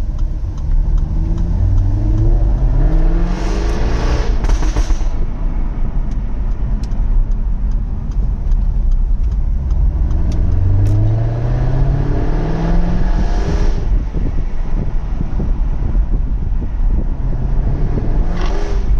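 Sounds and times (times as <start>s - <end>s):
car exhaust rumbling: 0.0s - 18.9s
exhaust pops: 3.6s - 5.3s.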